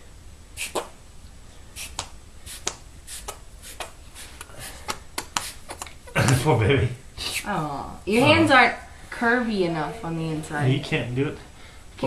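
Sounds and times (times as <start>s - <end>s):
child's hands slapping together: 1.8s - 4.0s, 4.8s - 6.5s.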